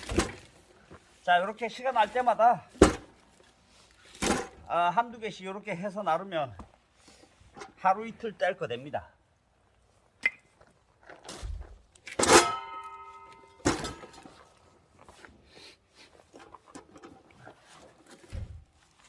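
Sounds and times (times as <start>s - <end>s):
light clatter and rustling: 9.7s - 19.0s
metallic clang ringing: 12.2s - 14.2s.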